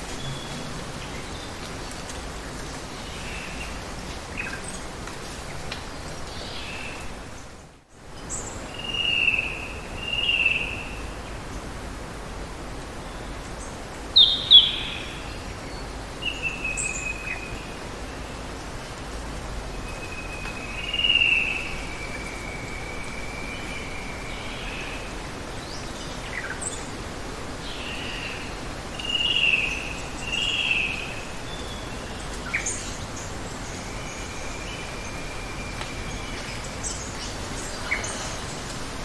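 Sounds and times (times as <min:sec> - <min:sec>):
birds chirping: 0:00.0 - 0:04.8.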